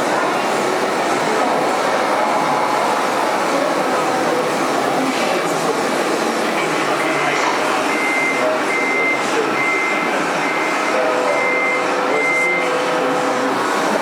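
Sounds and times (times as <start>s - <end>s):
murmuring voices: 0.0s - 14.0s
reversing beeper: 7.9s - 13.4s.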